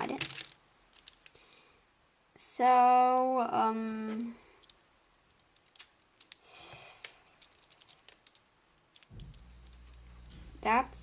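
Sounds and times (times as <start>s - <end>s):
plastic clicks and rattles: 0.1s - 1.4s, 7.0s - 10.5s
low hum: 9.1s - 11.0s.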